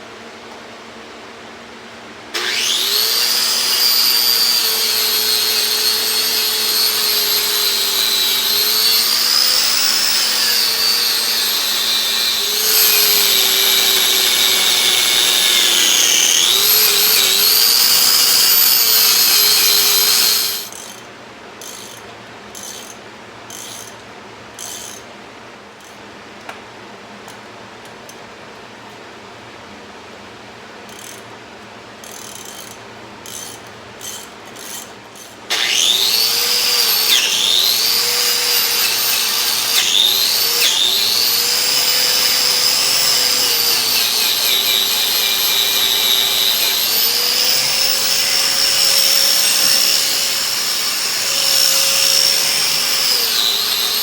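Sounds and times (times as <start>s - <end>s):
power tool whining: 2.4s - 21.0s, 35.5s - 54.0s.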